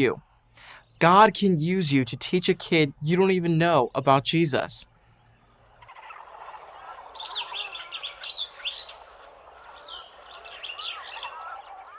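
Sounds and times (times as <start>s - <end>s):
birds chirping and calling: 6.8s - 11.9s.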